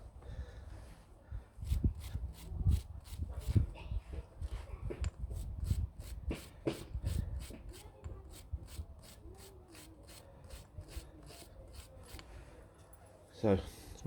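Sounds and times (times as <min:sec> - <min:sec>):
rubbing and knocking of metal parts: 0:04.4 - 0:12.2.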